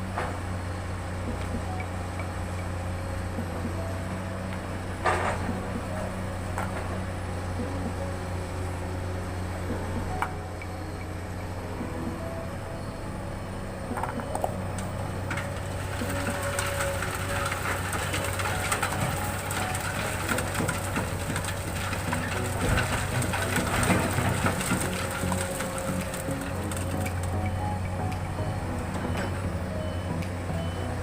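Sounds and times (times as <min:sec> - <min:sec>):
excavator diesel engine humming: 0:00.0 - 0:31.0
gritty crackle of sand: 0:15.3 - 0:27.4.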